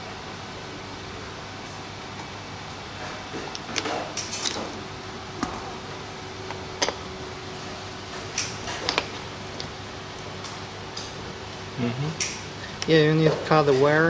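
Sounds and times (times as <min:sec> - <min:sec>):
steady background hum: 0:00.0 - 0:14.0
clicks and knocks of tools handled: 0:03.4 - 0:04.8.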